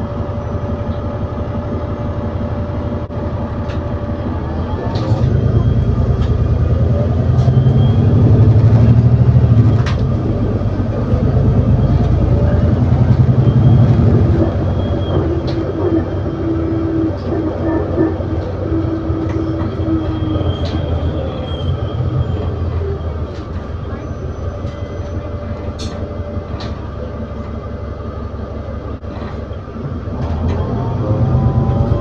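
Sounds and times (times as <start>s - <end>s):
bus engine pulling hard: 0.0s - 32.0s
interior rattles and clicks: 8.5s - 16.3s.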